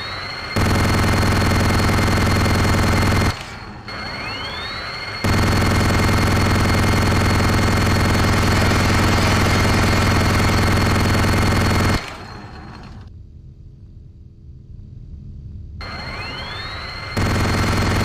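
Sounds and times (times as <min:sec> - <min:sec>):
high whine of spinning barrels: 0:00.0 - 0:18.0
rotary gun firing: 0:00.3 - 0:13.1, 0:15.9 - 0:18.0
faint low whir: 0:12.1 - 0:17.6.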